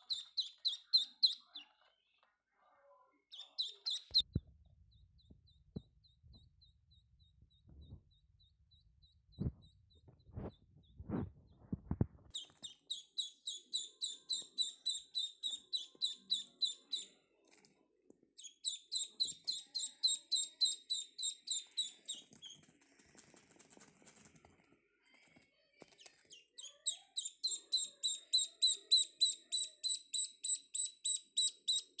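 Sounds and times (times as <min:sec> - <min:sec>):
ducklings peeping: 0:00.0 - 0:01.9, 0:03.3 - 0:04.3, 0:12.3 - 0:17.2, 0:18.4 - 0:22.7, 0:26.6 - 0:32.0.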